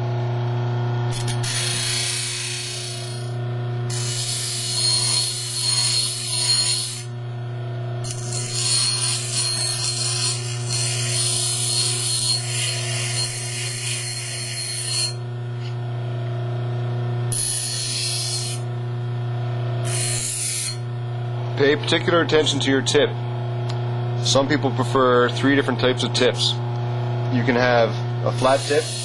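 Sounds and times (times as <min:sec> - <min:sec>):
bench grinder running: 0:00.0 - 0:29.0
steel grinding on wheel: 0:01.1 - 0:07.2, 0:08.0 - 0:15.2, 0:17.3 - 0:18.6, 0:19.8 - 0:20.9, 0:28.3 - 0:29.0.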